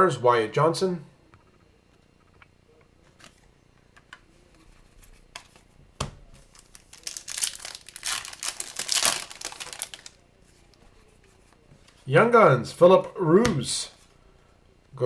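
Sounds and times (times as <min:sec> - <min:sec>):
foil wrapper crinkling and tearing: 0:06.4 - 0:10.2.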